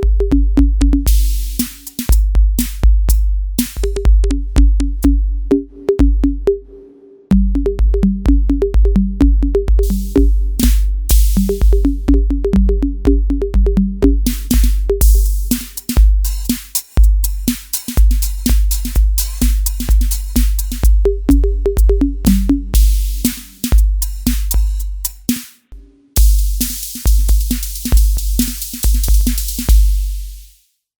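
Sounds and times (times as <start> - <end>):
hi-hat ticks: 0.0 - 6.1, 7.3 - 30.7
kick drum: 0.0 - 6.5, 7.3 - 30.5
electronic tom hits: 7.3 - 16.6, 18.0 - 24.7.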